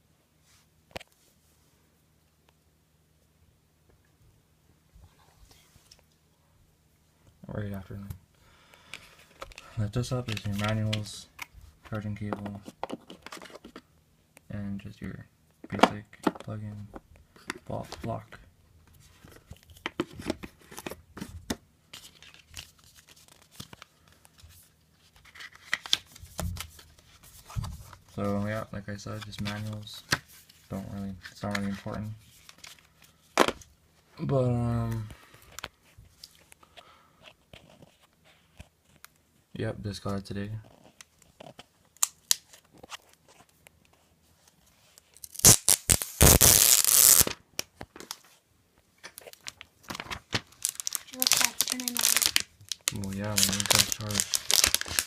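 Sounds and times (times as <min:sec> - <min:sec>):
packaging rustling and crinkling: 0:49.0 - 0:55.0.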